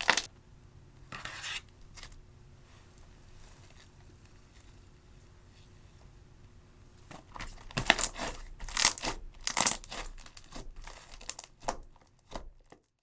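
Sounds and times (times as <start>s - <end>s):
slime squished by hand crackling: 7.3s - 12.7s.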